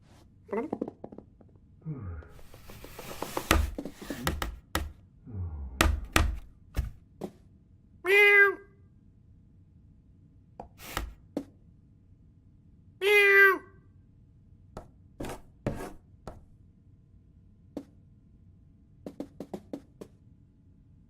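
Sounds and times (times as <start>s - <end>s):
knocks and thuds: 3.2s - 5.0s, 5.8s - 7.0s.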